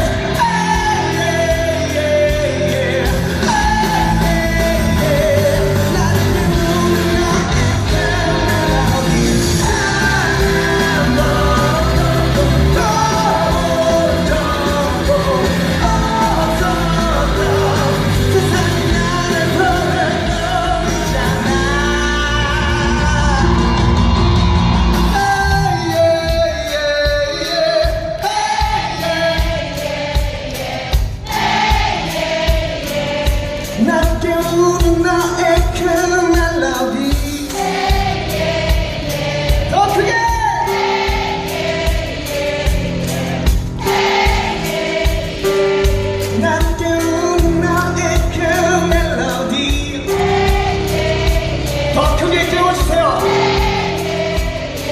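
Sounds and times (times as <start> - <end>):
man singing: 0.0 - 24.2, 25.0 - 29.9, 33.6 - 37.8, 39.6 - 40.8, 45.4 - 53.4
live pop-rock band: 0.0 - 54.9.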